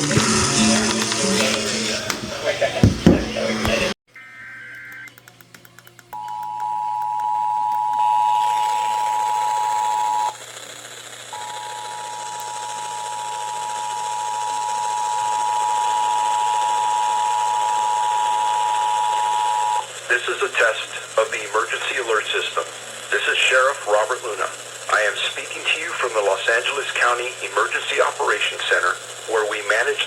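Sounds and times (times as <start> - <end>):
two-tone emergency alert alarm: 6.2 - 10.4, 11.3 - 19.9.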